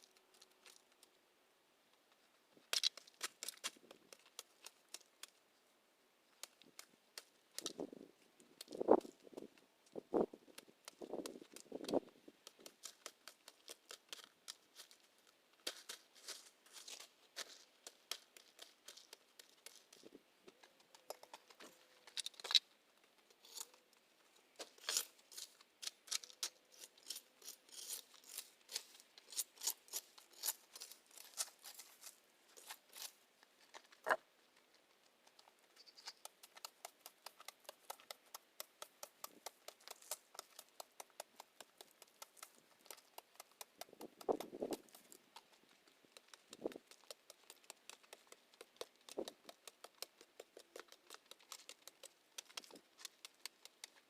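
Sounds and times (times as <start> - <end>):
plants snapping and rustling: 2.7 - 5.4, 36.0 - 54.0.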